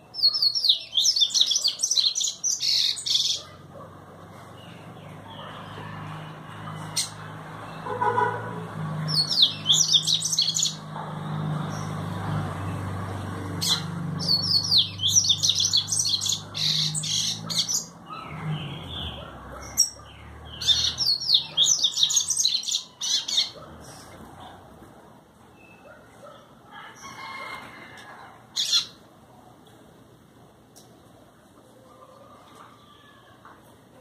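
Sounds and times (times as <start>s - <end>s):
seedeater bird twittering song: 0.0s - 3.5s, 9.0s - 10.9s, 13.6s - 23.6s.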